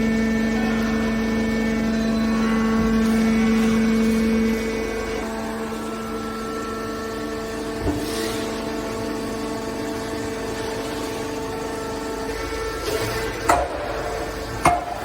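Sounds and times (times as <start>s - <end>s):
hydraulic baler humming: 0.0s - 15.0s.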